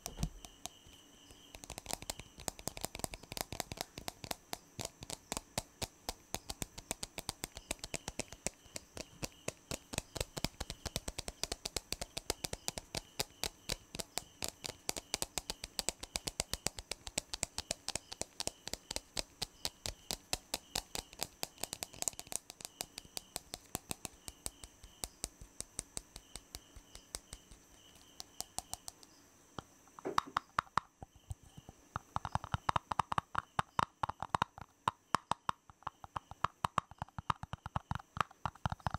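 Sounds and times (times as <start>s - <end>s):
rapid finger tapping on hard objects: 0.0s - 38.9s.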